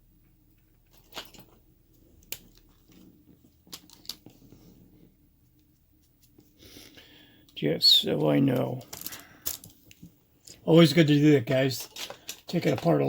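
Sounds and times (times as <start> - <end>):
small metal parts clicking: 3.7 - 4.3, 8.6 - 10.6, 11.5 - 13.0.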